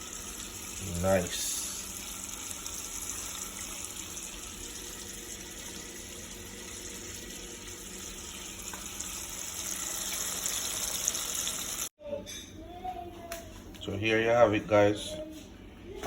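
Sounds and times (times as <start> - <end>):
hot oil sizzling: 0.0 - 11.9.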